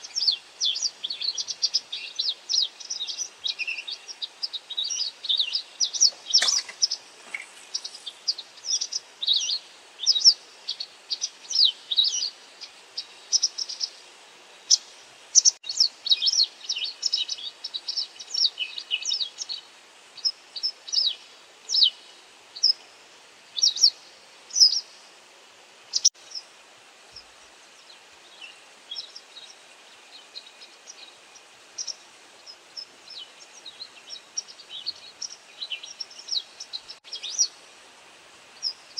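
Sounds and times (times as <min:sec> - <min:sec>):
bird contact calls: 0:00.0 - 0:12.3.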